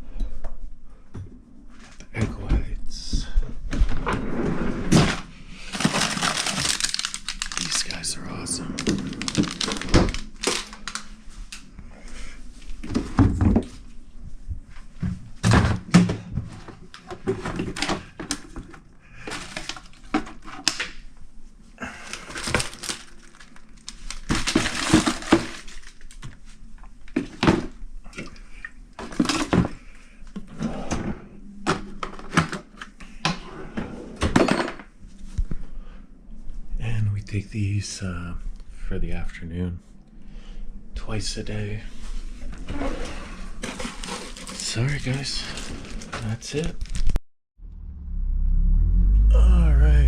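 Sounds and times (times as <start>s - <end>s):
objects thunking and knocking: 2.2s - 7.6s, 8.7s - 11.0s, 12.8s - 13.8s, 14.9s - 20.8s, 24.0s - 26.3s, 27.1s - 28.4s, 29.0s - 34.9s, 42.5s - 47.0s
rustling: 5.6s - 11.7s.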